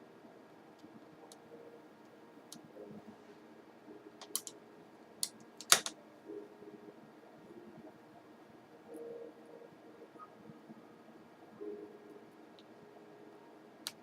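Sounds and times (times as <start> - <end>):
sharp plastic clicks: 4.2 - 4.6, 5.2 - 6.0.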